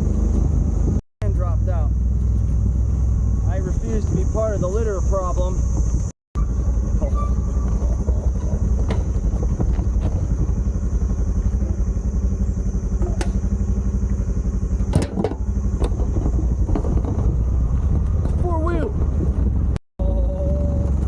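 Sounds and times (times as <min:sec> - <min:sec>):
moped engine running: 0:00.0 - 0:21.0
clacks and rattles from bike: 0:07.6 - 0:10.6.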